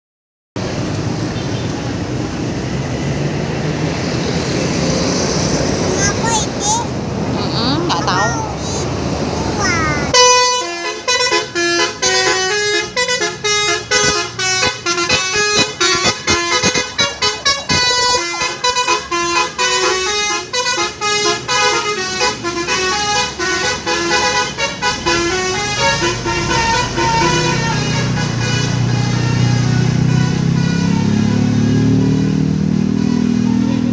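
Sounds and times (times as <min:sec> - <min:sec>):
multi-tone melodic air horn: 0:10.1 - 0:32.2.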